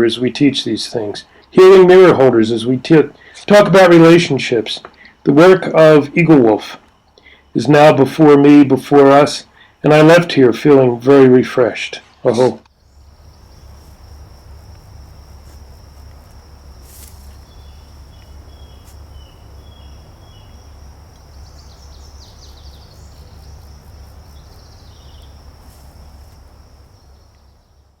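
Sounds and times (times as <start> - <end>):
bird calling: 12.0 - 27.8
constant low rumble: 12.3 - 28.0
insect trilling: 12.7 - 28.0.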